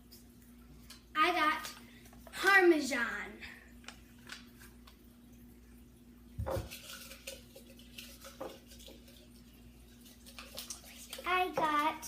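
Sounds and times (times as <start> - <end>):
dishes knocking and clinking: 6.4 - 6.8.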